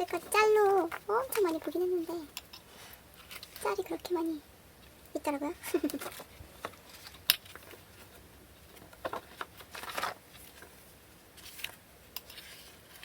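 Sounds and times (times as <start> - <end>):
packaging rustling: 5.8 - 13.0.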